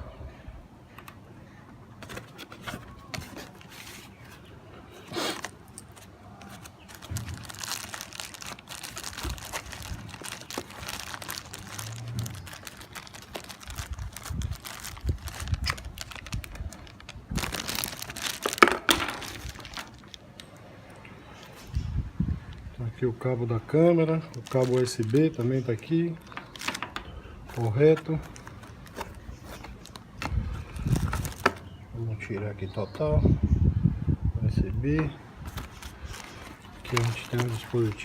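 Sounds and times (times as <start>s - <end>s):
plastic bags crinkling: 5.3s - 20.6s, 24.2s - 31.7s, 35.4s - 38.0s.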